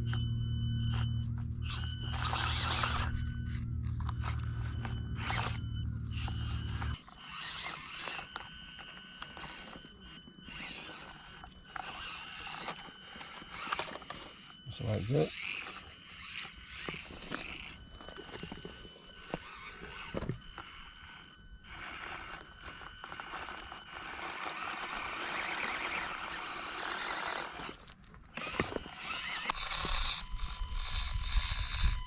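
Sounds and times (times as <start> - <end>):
small electric motor whining: 0.0 - 32.0
tyres crunching over rock: 15.4 - 21.1, 21.7 - 31.8.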